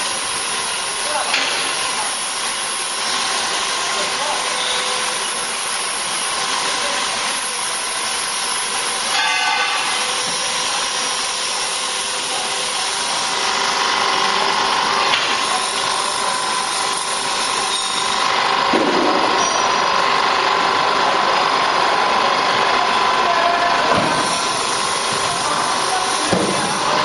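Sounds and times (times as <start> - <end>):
hydraulic unit hissing and whining: 0.0 - 27.0.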